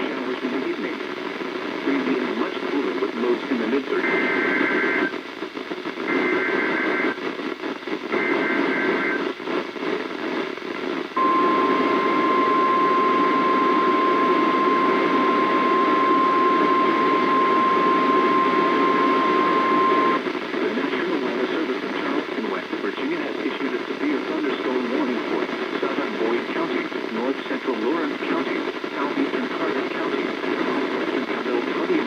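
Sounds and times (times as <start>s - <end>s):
radio hiss: 0.0s - 32.0s
steady warning alarm tone: 11.2s - 20.2s.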